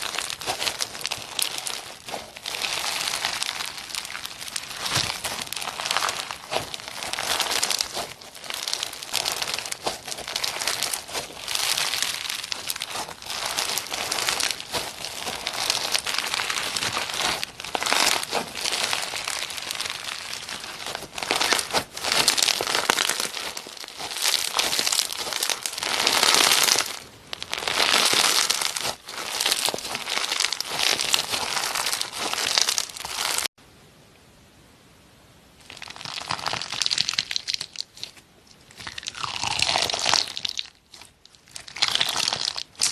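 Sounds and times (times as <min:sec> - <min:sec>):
slime crackling as squeezed: 0:00.0 - 0:33.6, 0:35.6 - 0:42.9.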